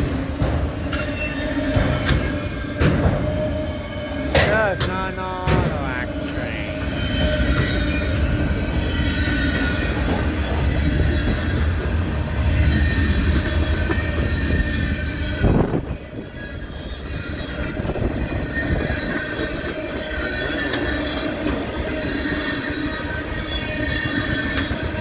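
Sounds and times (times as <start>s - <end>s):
train wheels rumbling: 5.5s - 25.0s.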